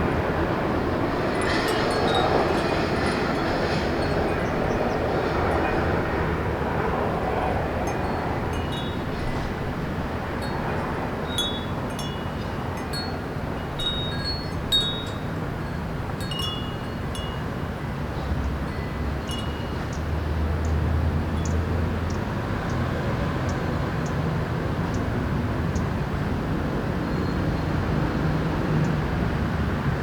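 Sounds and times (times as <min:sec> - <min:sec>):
city hum: 0:00.0 - 0:30.0
wind chime tinkling: 0:01.3 - 0:06.1, 0:07.8 - 0:20.2.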